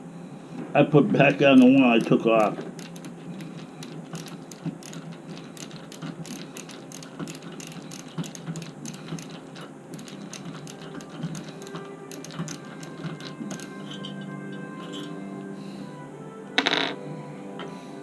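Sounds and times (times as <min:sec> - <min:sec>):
hand tools clicking in door lock: 0:01.5 - 0:14.1.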